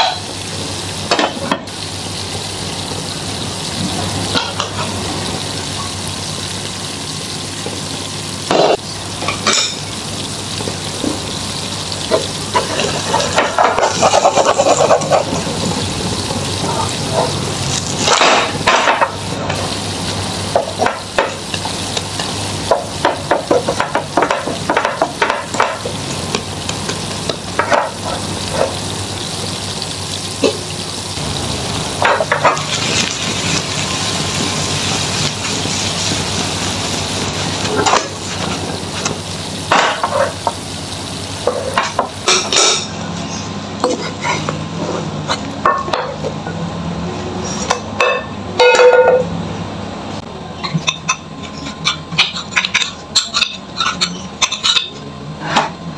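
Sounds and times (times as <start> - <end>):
omelette sizzling in oil: 0.0 - 43.5
utensil scraping the pan: 12.1 - 15.5.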